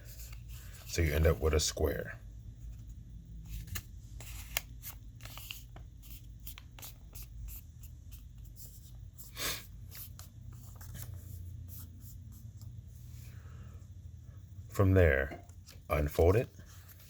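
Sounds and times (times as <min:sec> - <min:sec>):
paper crinkling and rustling: 0:03.5 - 0:07.3, 0:09.8 - 0:11.3.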